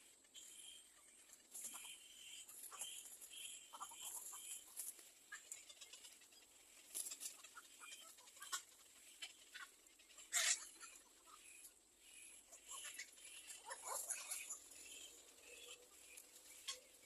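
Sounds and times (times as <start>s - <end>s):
nestling birds chirping: 0.0s - 17.0s
small ticks: 0.2s - 17.0s.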